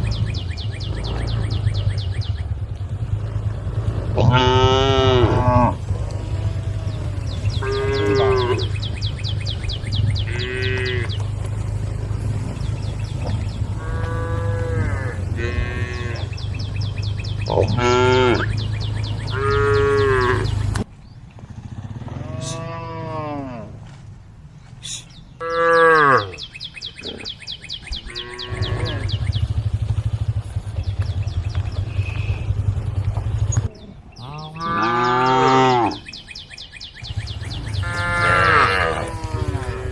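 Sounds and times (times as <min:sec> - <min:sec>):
cows mooing: 0:03.0 - 0:20.8, 0:22.0 - 0:24.0, 0:25.4 - 0:29.8, 0:31.9 - 0:36.2, 0:37.4 - 0:39.9.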